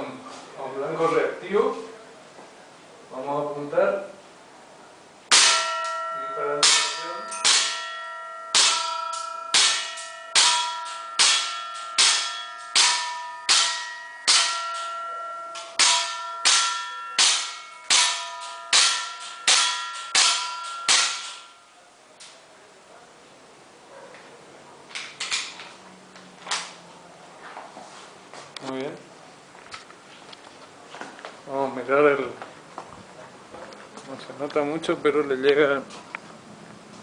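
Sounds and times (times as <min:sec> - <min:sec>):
pellets clanging on metal: 0:05.3 - 0:21.6.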